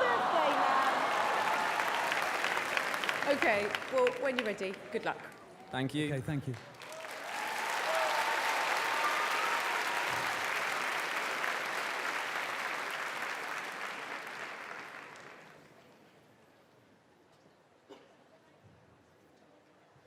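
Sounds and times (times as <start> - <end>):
studio audience applauding: 0.0 - 15.7.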